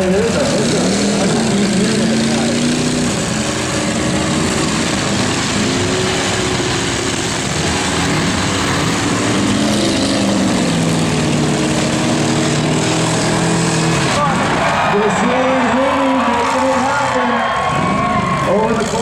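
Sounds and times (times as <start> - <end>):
car engines revving hard: 0.0 - 19.0.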